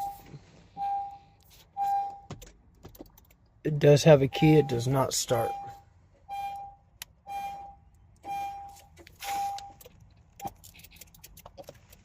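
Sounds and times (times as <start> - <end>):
car warning chime: 0.0 - 2.3, 4.0 - 9.8.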